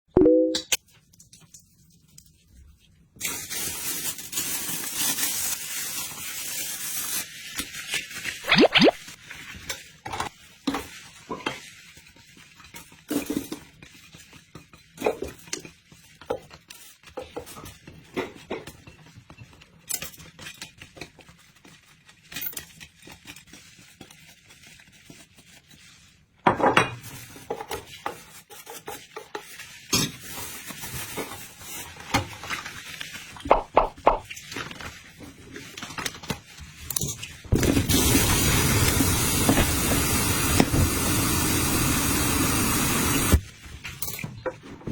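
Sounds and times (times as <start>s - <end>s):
running water: 8.5s - 9.1s.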